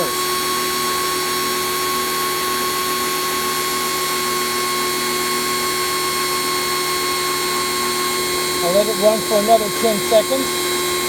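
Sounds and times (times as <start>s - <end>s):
pressure washer motor whining: 0.0s - 11.0s.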